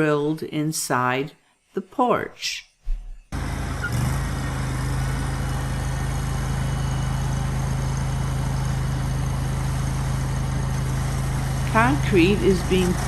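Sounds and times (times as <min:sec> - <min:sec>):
construction machine engine humming: 0:03.4 - 0:13.0.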